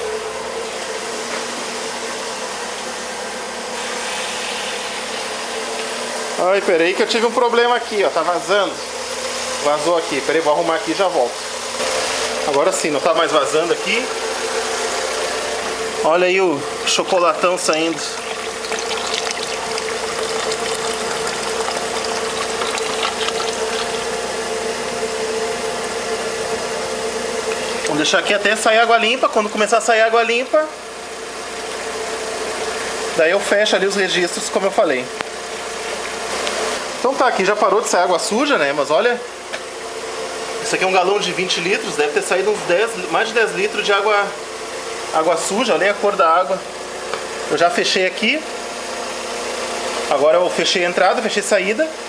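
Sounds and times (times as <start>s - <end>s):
water rushing through hose: 17.4s - 24.2s.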